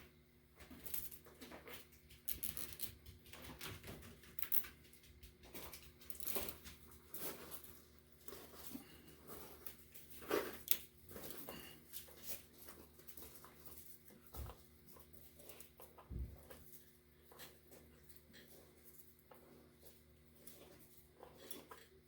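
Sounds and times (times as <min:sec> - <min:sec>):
faint clicks and taps: 0:00.6 - 0:07.4.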